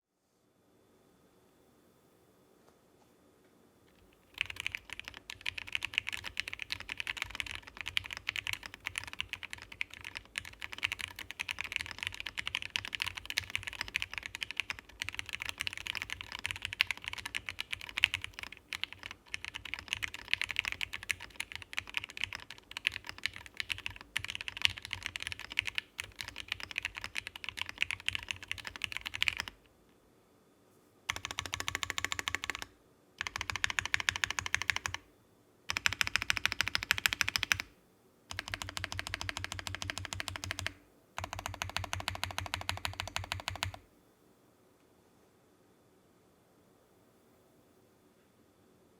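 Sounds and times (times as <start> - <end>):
fast typing on mechanical keyboard: 4.0 - 29.6, 31.1 - 35.0, 35.7 - 37.7, 38.3 - 43.8.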